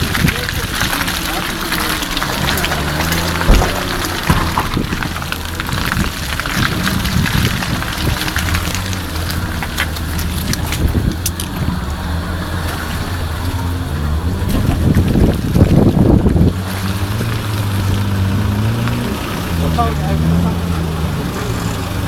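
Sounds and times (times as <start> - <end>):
engine running at low revs: 0.0 - 22.0
clicks and knocks: 1.9 - 7.5.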